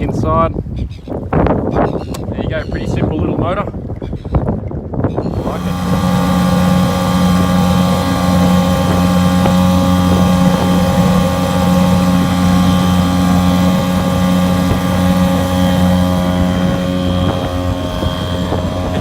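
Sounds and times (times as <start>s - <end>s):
outboard motor droning: 5.2s - 19.0s.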